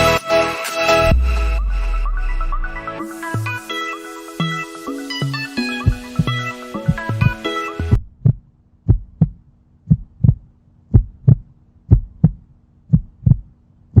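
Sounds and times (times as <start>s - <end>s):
music: 0.0s - 8.0s
heartbeat thumps: 5.8s - 14.0s.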